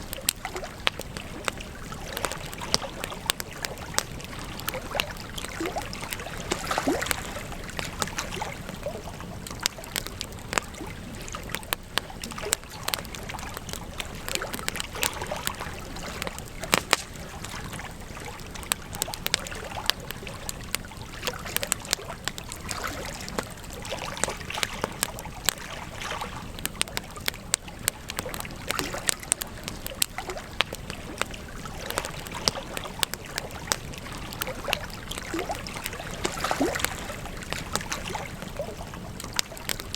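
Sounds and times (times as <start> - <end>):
burning wood crackling: 0.0 - 39.9
flames hissing: 7.5 - 23.8
loud pop from fire: 16.2 - 17.2.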